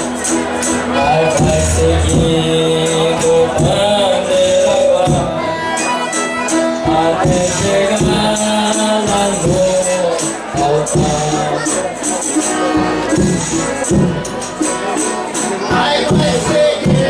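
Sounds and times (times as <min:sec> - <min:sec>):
sustained melodic instrument lines: 0:01.2 - 0:02.8.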